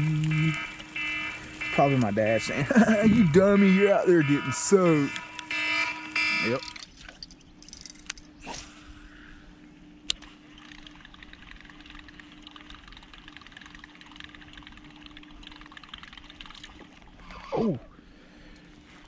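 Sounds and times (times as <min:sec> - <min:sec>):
low steady hum: 0:00.0 - 0:19.0
rapid ticking of lure reeled in: 0:10.5 - 0:16.9.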